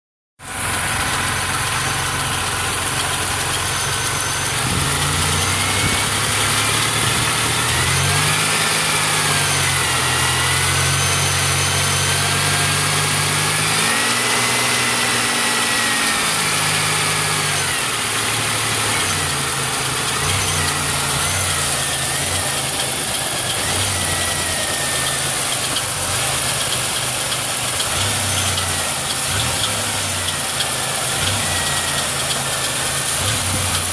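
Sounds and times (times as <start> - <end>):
car engine running: 0.4 - 33.9
high wavering squeal: 1.0 - 12.8, 16.2 - 29.7.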